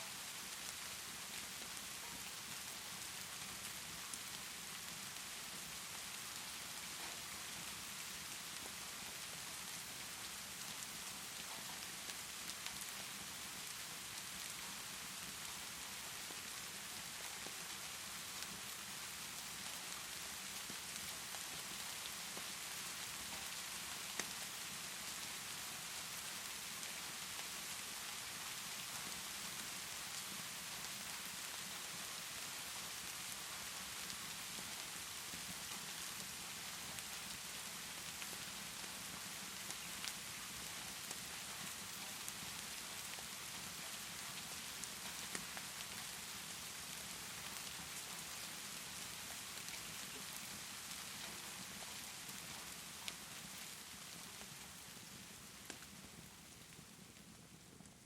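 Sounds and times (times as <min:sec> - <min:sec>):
steady rain hissing: 0:00.0 - 0:58.0
fireplace crackling pops: 0:21.8 - 0:24.5, 0:54.4 - 0:57.6.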